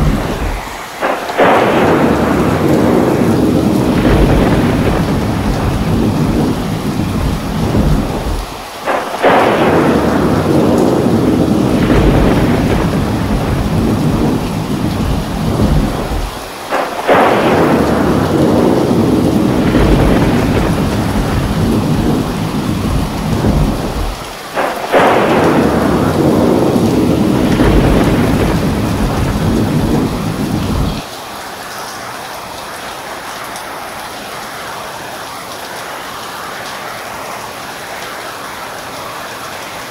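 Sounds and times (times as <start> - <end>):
thunderclaps rolling into rumble: 0.0 - 31.0
heavy rain: 0.0 - 39.9.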